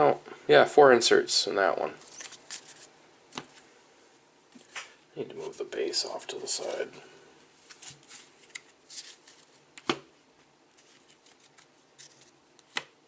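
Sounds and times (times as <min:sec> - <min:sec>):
trading cards rustling and scraping: 0:02.0 - 0:03.7, 0:04.5 - 0:06.9, 0:07.6 - 0:09.9, 0:10.7 - 0:12.9.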